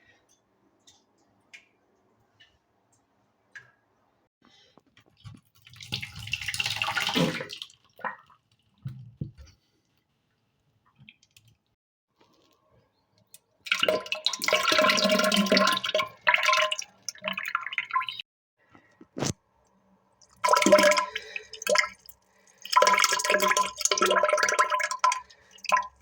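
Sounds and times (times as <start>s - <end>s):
drips and plops in water: 5.2s - 9.5s, 13.6s - 18.2s, 20.2s - 26.0s
diarrhea splattering into toilet: 5.3s - 8.3s, 20.3s - 26.0s.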